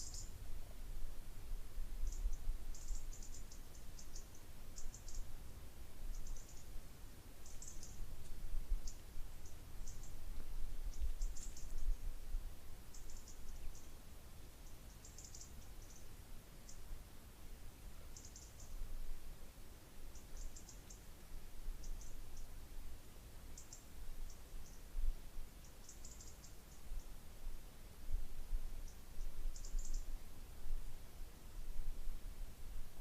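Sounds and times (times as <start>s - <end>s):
insects chirping: 0.0s - 0.4s, 2.0s - 5.4s, 6.1s - 6.8s, 7.4s - 8.0s, 8.8s - 10.2s, 10.8s - 12.0s, 12.8s - 14.0s, 14.6s - 16.8s, 18.2s - 18.8s, 23.6s - 24.9s, 25.6s - 27.2s, 28.8s - 30.2s.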